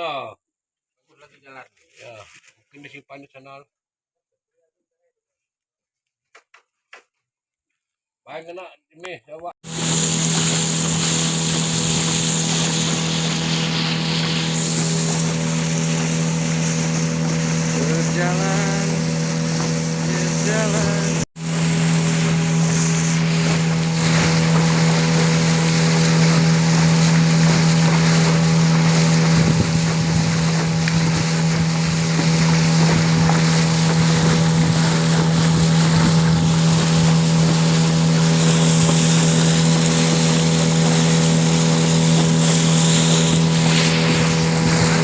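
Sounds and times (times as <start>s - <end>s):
outboard motor running: 9.6s - 45.0s
water and wind hiss: 9.6s - 45.0s.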